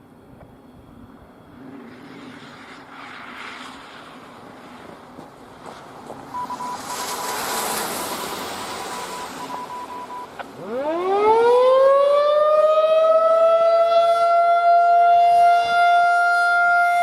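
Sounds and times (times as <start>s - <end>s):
vehicle passing: 1.5s - 11.5s
high electronic tone: 6.3s - 10.7s.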